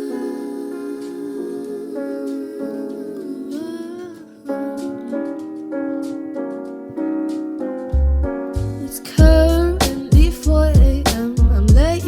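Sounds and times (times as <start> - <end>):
soft humming song: 0.0 - 5.5
gentle instrumental backing: 0.0 - 12.0.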